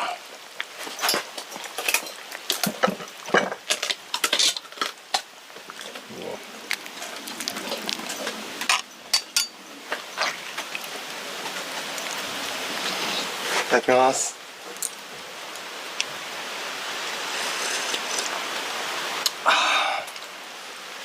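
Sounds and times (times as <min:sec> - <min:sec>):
utensils clinking against cookware: 0:00.9 - 0:05.0, 0:08.1 - 0:09.6.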